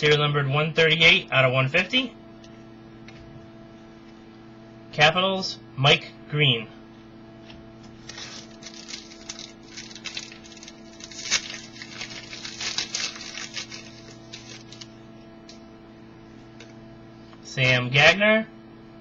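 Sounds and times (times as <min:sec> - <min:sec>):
electrical hum: 0:00.0 - 0:19.0
cards clicking and rustling: 0:08.1 - 0:14.9.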